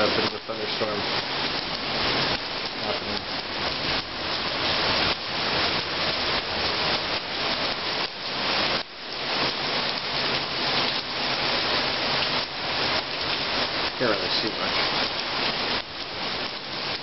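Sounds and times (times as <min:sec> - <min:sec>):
heavy rain downpour: 0:00.0 - 0:17.0.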